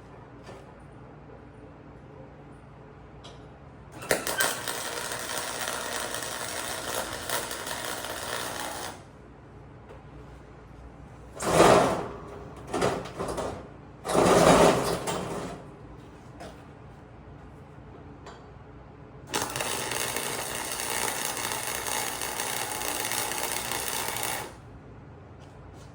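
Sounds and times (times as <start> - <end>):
arc welder buzzing: 4.0 - 9.1, 19.3 - 24.6.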